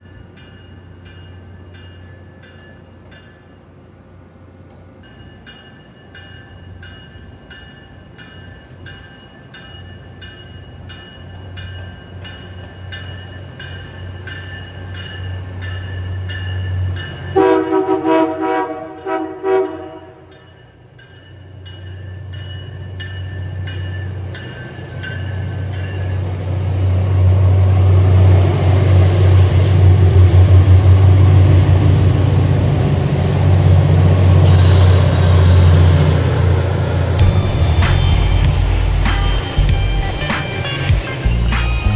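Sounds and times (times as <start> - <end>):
diesel locomotive engine: 0.0 - 41.9
rail noise: 0.0 - 41.9
train horn blasts: 17.3 - 20.3.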